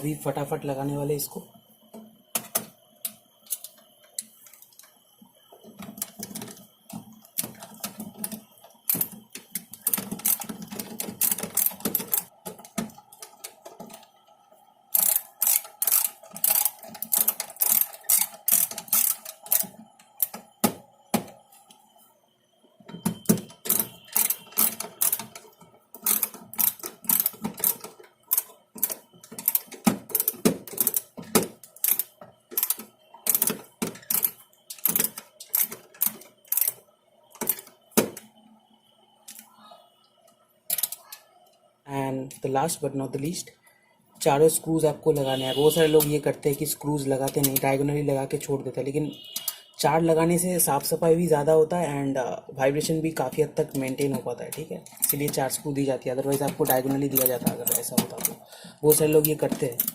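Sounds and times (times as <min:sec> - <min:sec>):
small metal parts clicking and rattling: 0:02.3 - 0:05.0, 0:05.8 - 0:14.3, 0:14.9 - 0:20.6, 0:22.9 - 0:38.3, 0:40.7 - 0:41.6, 0:53.6 - 0:55.6, 0:56.2 - 0:59.9.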